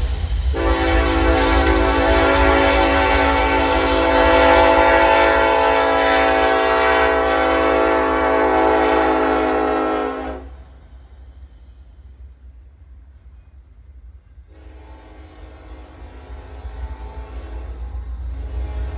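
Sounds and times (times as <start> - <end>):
low rumble: 0.0 - 6.1
locomotive air horn blast: 0.5 - 10.6, 14.5 - 18.9.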